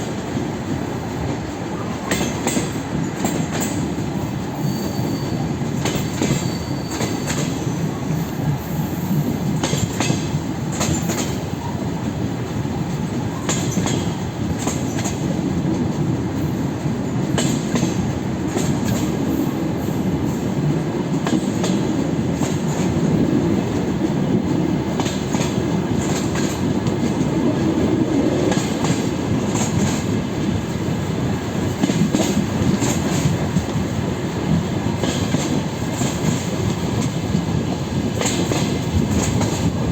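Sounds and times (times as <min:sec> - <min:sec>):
train running rumble: 0:00.0 - 0:39.9
high-pitched wheel squeal: 0:04.6 - 0:05.5, 0:06.3 - 0:07.8.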